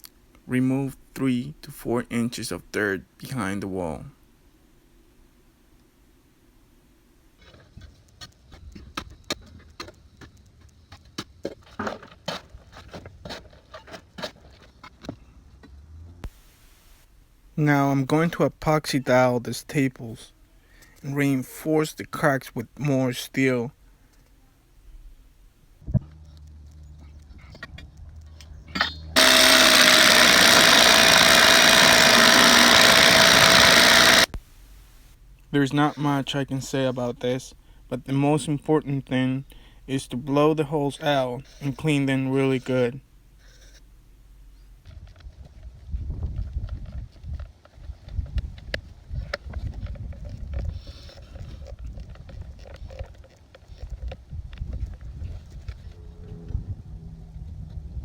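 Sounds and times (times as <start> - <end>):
power tool running: 29.2 - 35.1
low rumble: 55.8 - 58.0.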